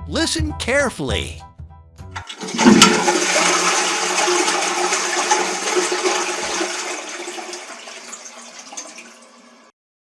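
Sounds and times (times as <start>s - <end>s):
toilet flushing: 2.2s - 9.7s.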